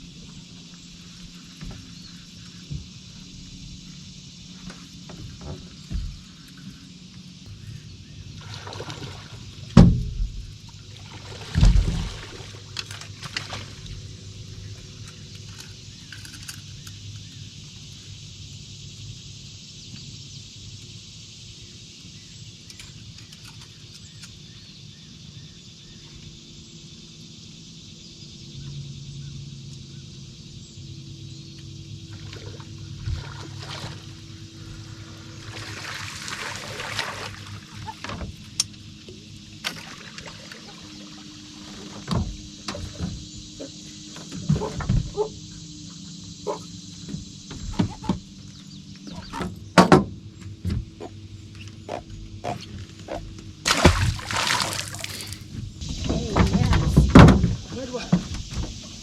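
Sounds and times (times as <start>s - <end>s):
boat motor running: 0.0s - 17.4s, 28.8s - 58.6s
water and wind hiss: 0.0s - 49.7s, 50.6s - 59.0s.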